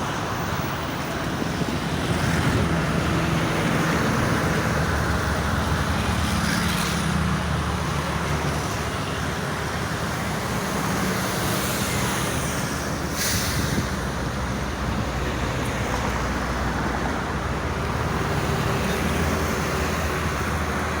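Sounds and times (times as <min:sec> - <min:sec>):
road traffic passing: 0:00.0 - 0:21.0.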